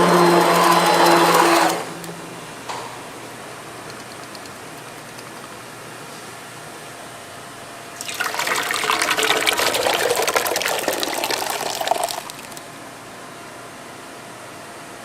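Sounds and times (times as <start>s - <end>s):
water pouring: 8.0s - 12.6s.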